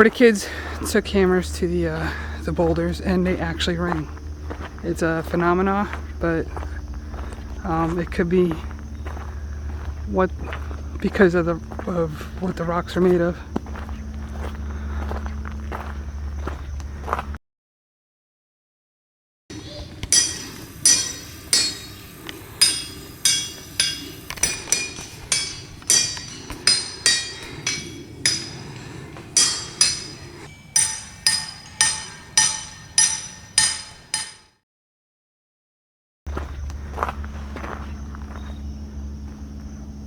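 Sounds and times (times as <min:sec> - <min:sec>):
hammer striking ringing rocks: 0:19.5 - 0:34.5.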